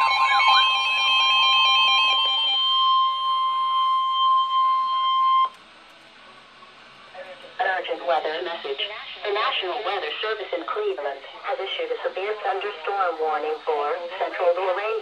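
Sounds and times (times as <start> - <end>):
steady high electronic tone: 0.0 - 5.6
wavering siren-like tone: 0.0 - 5.6.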